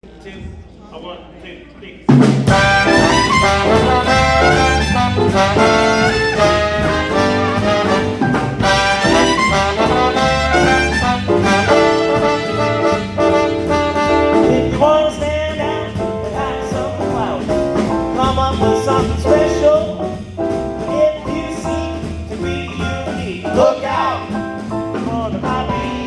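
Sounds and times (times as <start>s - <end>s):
swing band playing: 2.1s - 26.0s
horn section riffs: 2.4s - 15.1s.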